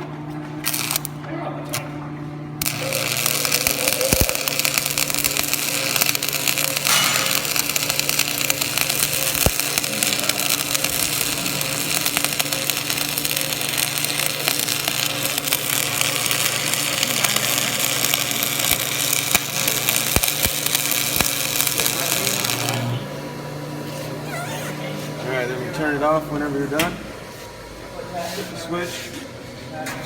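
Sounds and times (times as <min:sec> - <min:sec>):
welding machine humming: 0:00.5 - 0:27.8
welding arc crackling and popping: 0:00.6 - 0:01.2, 0:02.6 - 0:23.0.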